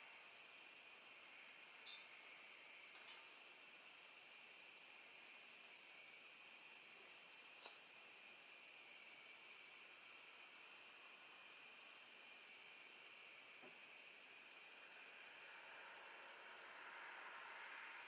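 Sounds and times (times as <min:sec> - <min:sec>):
crickets trilling: 0:00.0 - 0:18.0.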